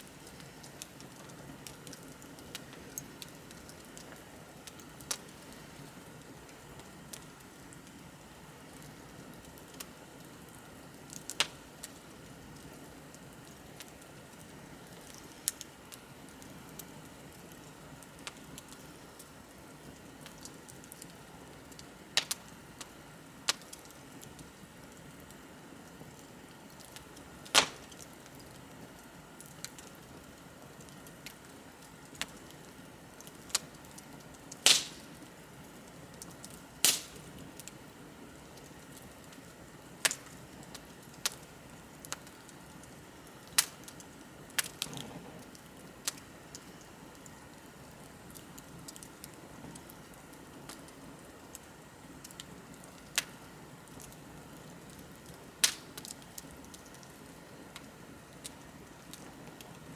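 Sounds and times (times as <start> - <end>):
wood fire crackling: 0.0 - 59.9
hiss of burning: 26.3 - 59.9
sharp fire pops: 27.4 - 28.2, 34.5 - 35.2, 36.2 - 37.7, 40.0 - 40.4, 43.5 - 46.2, 55.6 - 56.9.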